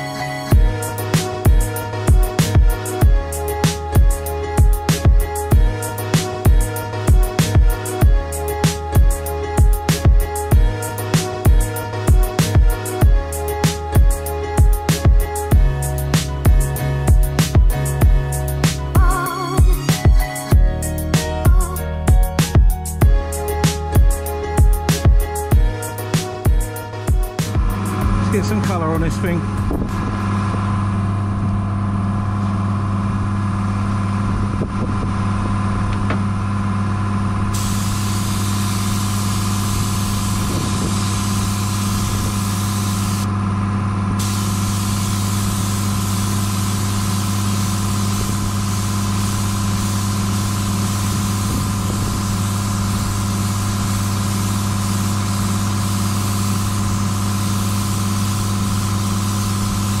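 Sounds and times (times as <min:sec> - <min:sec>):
paint spray gun hissing: 0:00.5 - 0:29.8, 0:37.5 - 0:43.3, 0:44.2 - 1:00.0
motor humming: 0:00.5 - 1:00.0.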